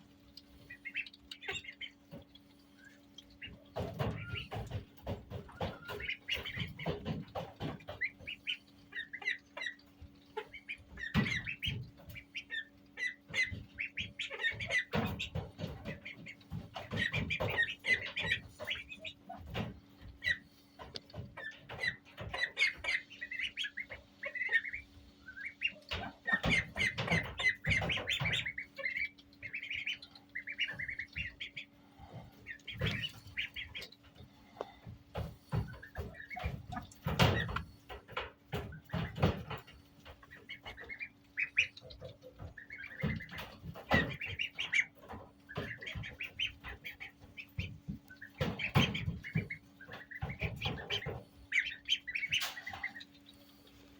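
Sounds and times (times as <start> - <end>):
ducklings peeping: 0.0 - 53.9
low steady hum: 0.0 - 53.9
knocks and bumps: 3.3 - 8.6, 13.3 - 24.6, 25.8 - 29.9, 30.6 - 52.9.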